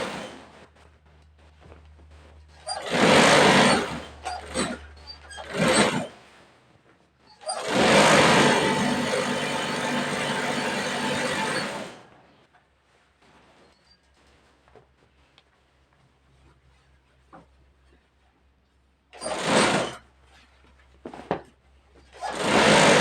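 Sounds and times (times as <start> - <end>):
industrial sewing machine running: 2.7 - 4.8, 5.4 - 6.1, 7.5 - 12.1, 19.2 - 20.0, 22.2 - 23.0.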